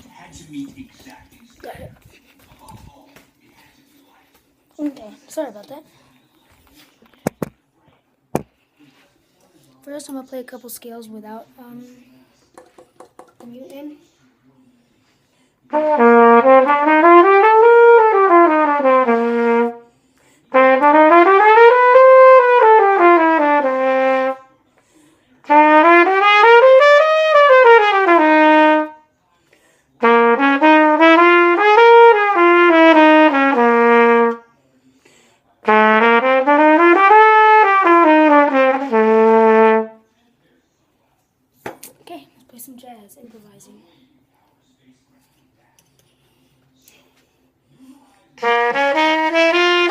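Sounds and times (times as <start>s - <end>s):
trumpet playing scales: 15.7s - 24.5s, 25.4s - 29.0s, 30.0s - 34.5s, 35.6s - 40.0s, 48.4s - 49.9s.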